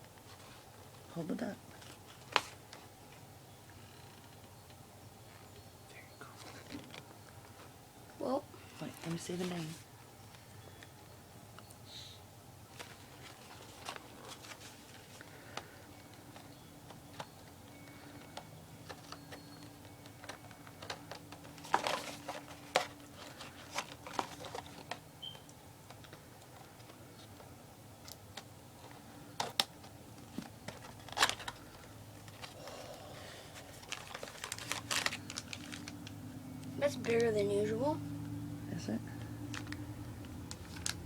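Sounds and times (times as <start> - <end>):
packaging crinkling and clicking: 12.7 - 32.8, 33.5 - 37.3, 39.2 - 41.0.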